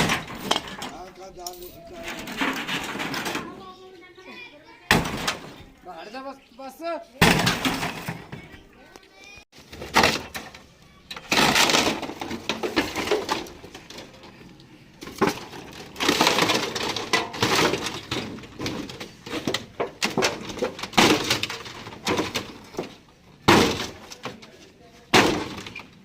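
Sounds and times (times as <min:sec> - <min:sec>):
refrigerator being smashed: 0:00.0 - 0:01.0, 0:02.0 - 0:03.6, 0:04.9 - 0:05.6, 0:07.2 - 0:08.5, 0:09.6 - 0:14.4, 0:15.0 - 0:24.4, 0:25.1 - 0:26.0.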